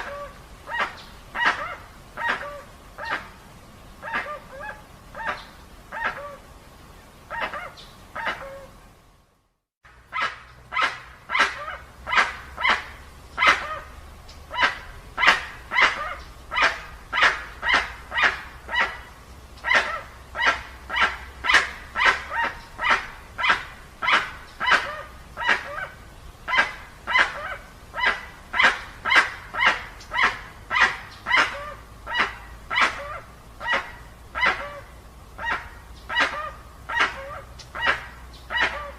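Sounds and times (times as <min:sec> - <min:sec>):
bird barking honks: 0:26.5 - 0:38.9.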